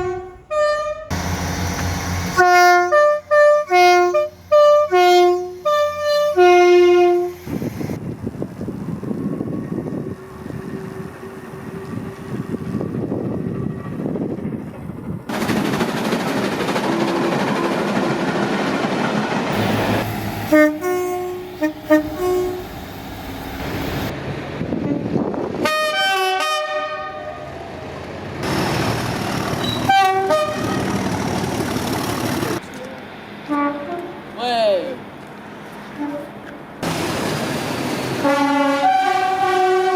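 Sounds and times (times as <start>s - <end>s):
train horn toots: 0.0s - 7.6s, 19.6s - 24.0s, 25.6s - 27.5s, 29.6s - 31.0s, 33.5s - 34.2s, 35.9s - 36.5s, 38.2s - 39.9s
train rumble and rail clatter: 0.0s - 39.9s.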